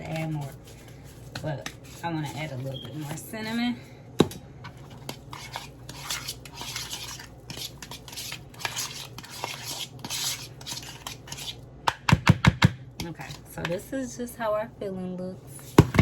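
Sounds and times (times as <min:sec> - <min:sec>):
utensil scraping in a bowl: 0:00.0 - 0:03.8, 0:04.7 - 0:11.6.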